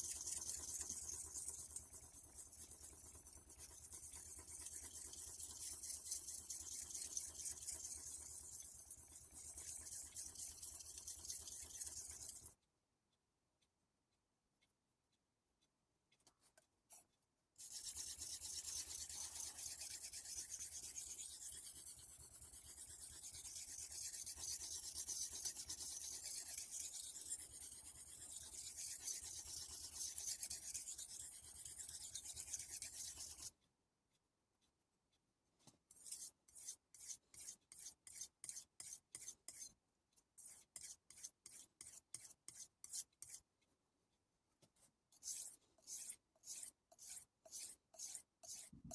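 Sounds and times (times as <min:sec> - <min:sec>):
knife blade scraping on whetstone: 0:45.2 - 0:48.7.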